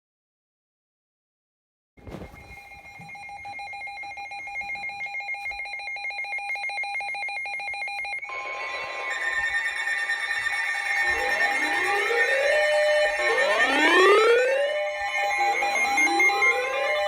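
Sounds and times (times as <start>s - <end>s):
fast-pulsing electronic alarm trill: 8.2s - 17.0s
steady weather radio warning tone: 8.2s - 17.0s.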